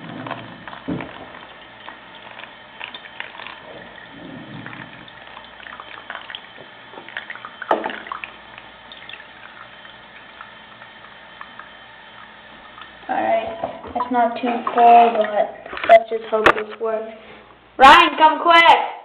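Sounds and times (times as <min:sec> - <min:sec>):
tap running water: 0:00.0 - 0:18.7.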